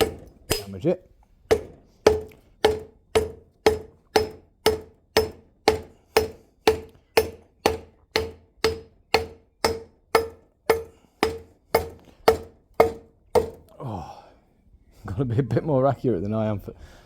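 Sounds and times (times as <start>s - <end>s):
rubber mallet tapping metal: 0.0s - 0.9s, 1.5s - 13.7s.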